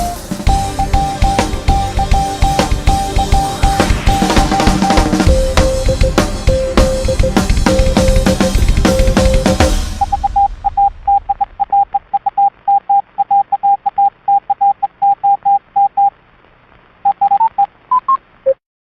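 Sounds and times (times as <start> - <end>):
morse code beeps: 0.0 - 16.1, 17.0 - 18.6
short beeps climbing in pitch: 0.7 - 8.2, 10.0 - 16.1.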